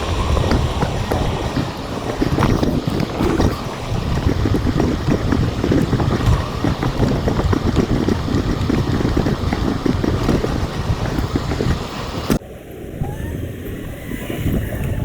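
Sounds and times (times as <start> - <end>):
small rattles and knocks: 0.0 - 12.4
wind buffeting microphone: 0.0 - 15.0.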